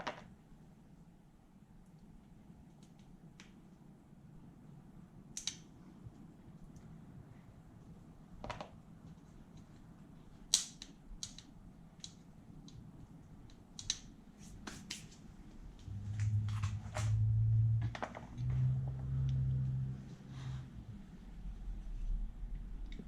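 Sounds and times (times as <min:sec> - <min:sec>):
low steady hum: 0:11.5 - 0:23.0.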